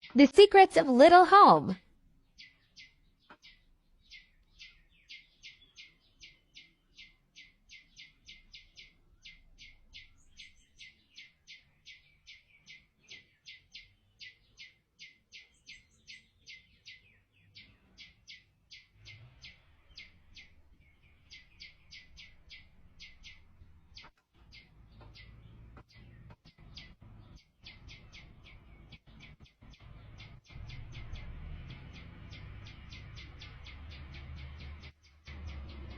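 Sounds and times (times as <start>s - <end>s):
small bird chirping: 0.0s - 1.2s, 2.2s - 35.9s.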